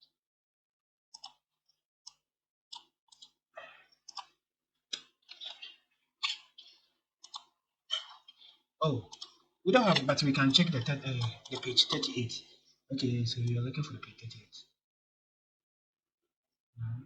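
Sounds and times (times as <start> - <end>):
computer mouse clicks: 1.1 - 1.4, 2.1 - 3.4, 4.0 - 8.5, 9.1 - 10.1, 10.7 - 12.2.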